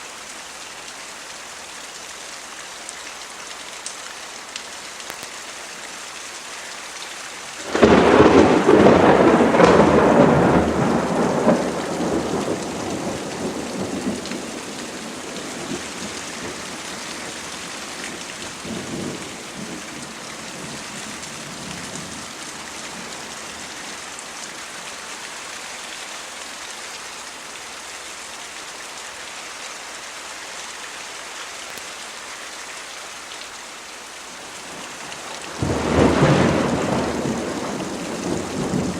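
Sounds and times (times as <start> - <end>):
steady rain falling: 0.0 - 38.9
thunder rumbling: 7.6 - 23.2, 34.7 - 38.9.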